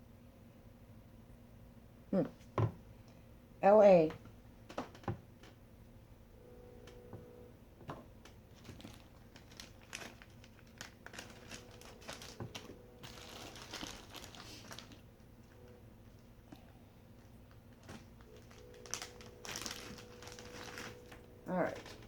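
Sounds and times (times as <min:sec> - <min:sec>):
plastic packaging crinkling: 0:08.2 - 0:22.0.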